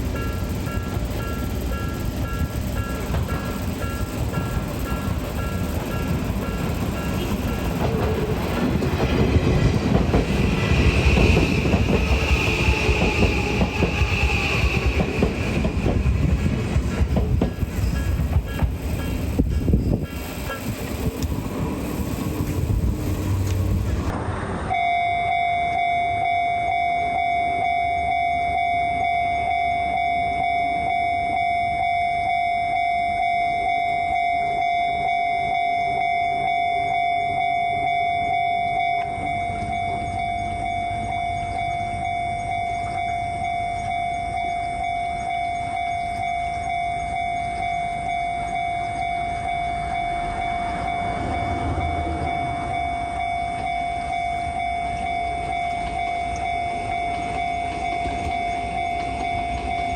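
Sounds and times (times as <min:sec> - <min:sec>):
train rumble: 0:00.0 - 0:59.9
level crossing alarm bell: 0:00.1 - 0:07.9, 0:24.7 - 0:59.9.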